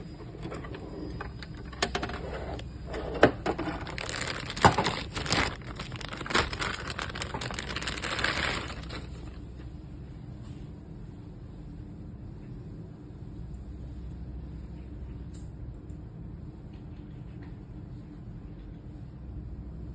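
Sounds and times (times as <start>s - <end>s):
rustling and crinkling: 3.3s - 9.7s.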